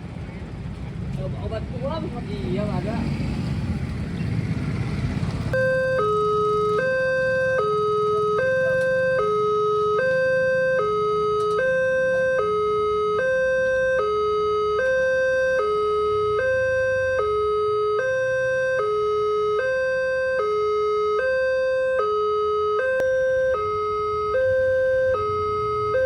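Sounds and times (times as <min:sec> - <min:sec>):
low traffic rumble: 0:00.0 - 0:26.0
level-crossing two-tone alarm: 0:05.5 - 0:26.0.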